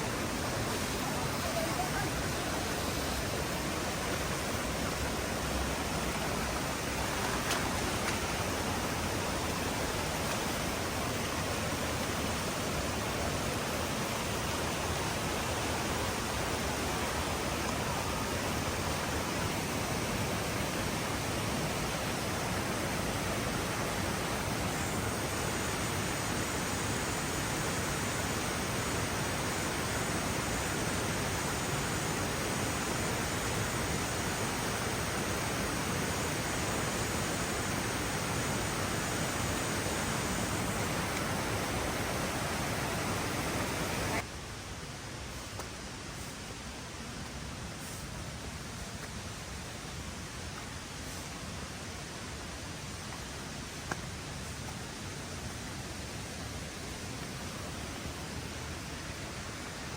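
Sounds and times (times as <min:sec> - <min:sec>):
waterfall roaring over rock: 0:00.0 - 0:44.3.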